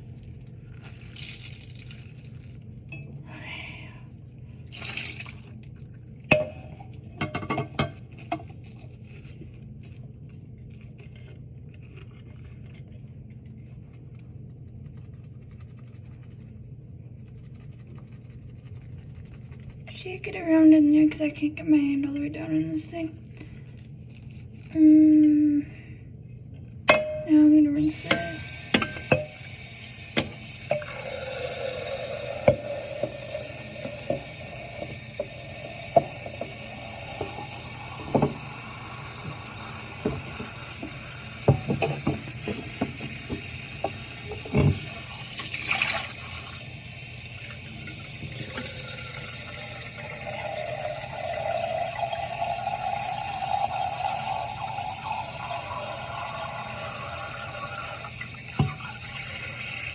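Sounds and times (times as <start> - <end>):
bottle filling with water: 0.8 - 2.3, 4.7 - 5.7, 27.8 - 59.9
tap water running into sink: 1.0 - 2.1, 4.7 - 5.5, 27.8 - 59.9
bottle knocking against sink: 37.2 - 38.5, 40.0 - 44.9, 58.6 - 58.8.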